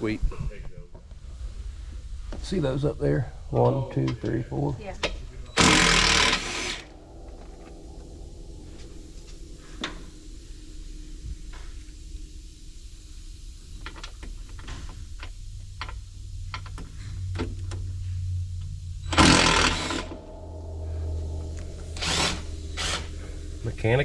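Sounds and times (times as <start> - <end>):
low motor hum: 1.6 - 24.0
power tool burst: 5.6 - 6.9, 19.1 - 23.5.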